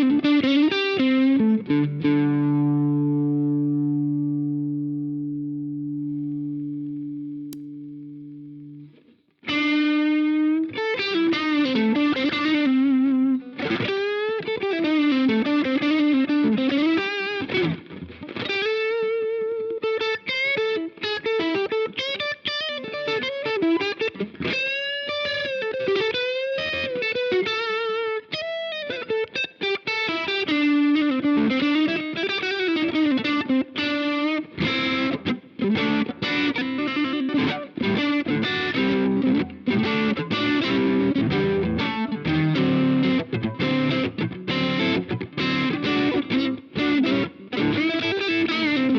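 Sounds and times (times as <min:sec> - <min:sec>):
overdriven electric guitar lead: 0:11.0 - 0:48.9.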